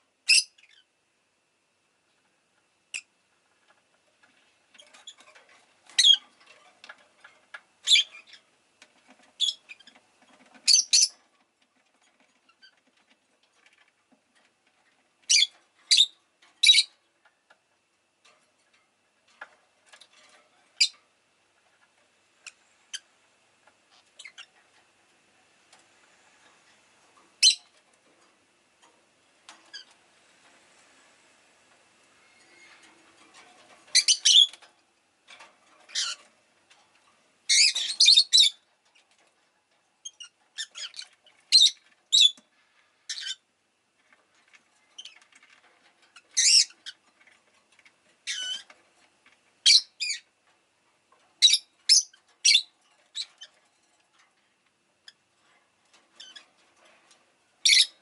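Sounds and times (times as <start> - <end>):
bird chirping high-pitched: 10.7 - 11.2, 15.3 - 16.9, 27.4 - 27.7, 34.0 - 34.6, 37.5 - 38.6, 40.1 - 42.4, 49.7 - 50.2, 51.4 - 53.3, 57.6 - 58.0.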